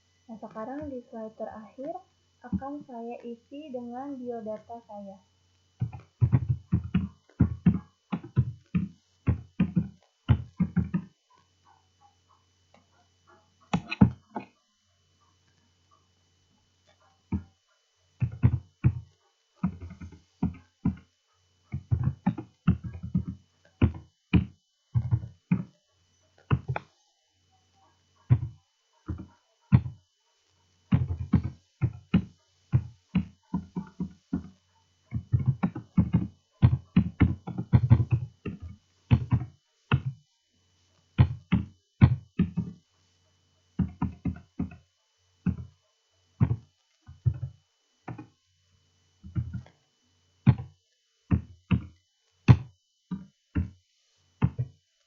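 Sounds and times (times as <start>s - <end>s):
computer keyboard typing: 18.2s - 19.0s.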